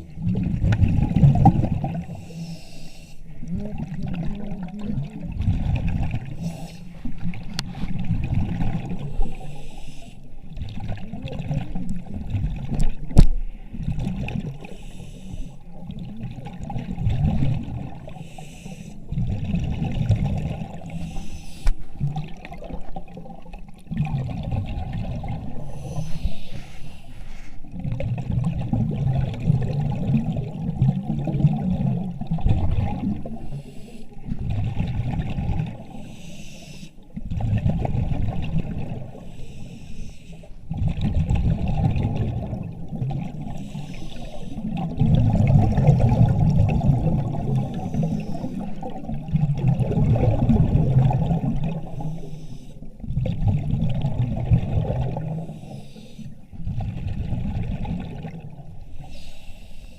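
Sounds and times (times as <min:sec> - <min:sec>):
air bubbling: 0:00.0 - 0:02.2, 0:27.8 - 0:33.5, 0:40.7 - 0:52.0, 0:53.0 - 0:55.5
diver breathing: 0:02.0 - 0:03.5, 0:06.3 - 0:07.2, 0:09.1 - 0:10.3, 0:14.6 - 0:15.7, 0:18.1 - 0:19.1, 0:20.8 - 0:22.0, 0:25.5 - 0:27.7, 0:33.3 - 0:34.4, 0:35.8 - 0:37.2, 0:39.1 - 0:40.7, 0:43.5 - 0:44.8, 0:47.5 - 0:48.9, 0:51.8 - 0:53.0, 0:55.2 - 0:56.5, 0:58.9 - 0:59.9.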